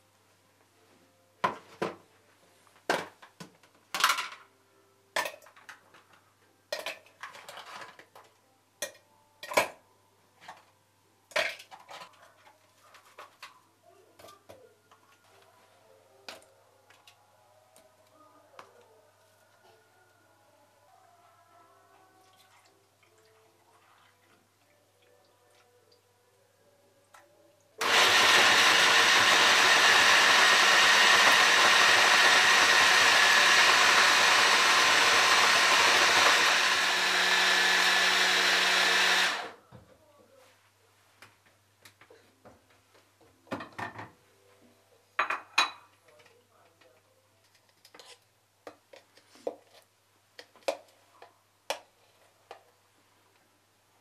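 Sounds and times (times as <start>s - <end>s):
blender motor running: 27.8s - 39.6s.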